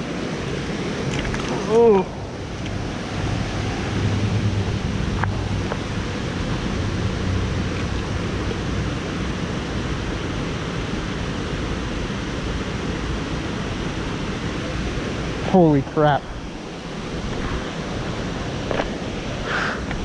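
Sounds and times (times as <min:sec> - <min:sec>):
water pouring over waterfall: 0:01.0 - 0:02.2.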